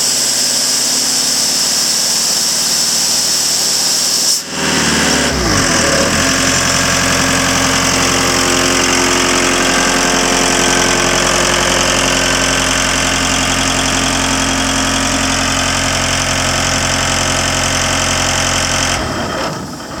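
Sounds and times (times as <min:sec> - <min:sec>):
diesel engine idling: 0:04.4 - 0:20.0.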